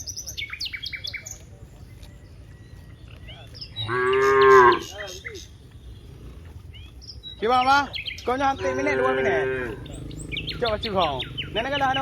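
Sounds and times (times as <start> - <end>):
small birds chirping: 0.0 - 12.0
cow mooing: 3.8 - 4.9, 8.5 - 12.0.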